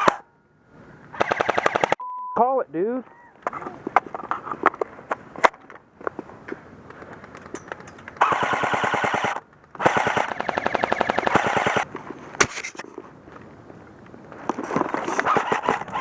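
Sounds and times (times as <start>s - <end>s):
airsoft gun firing full-auto: 1.2s - 2.0s, 8.2s - 11.8s.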